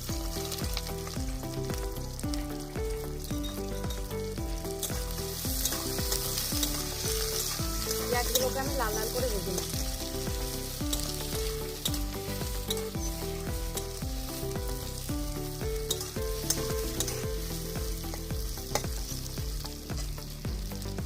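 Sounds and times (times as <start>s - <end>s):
background music: 0.0s - 21.0s
onions sizzling in oil: 0.0s - 21.0s.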